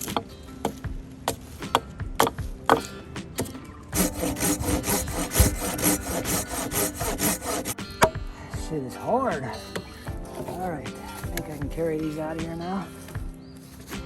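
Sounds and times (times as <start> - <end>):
hand saw cutting through log: 3.4 - 7.8, 10.3 - 14.0.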